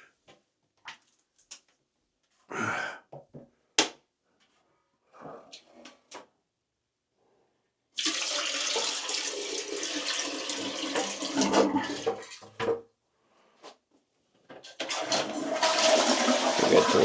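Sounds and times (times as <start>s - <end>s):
water rushing into toilet bowl: 8.0s - 12.6s, 14.8s - 17.0s.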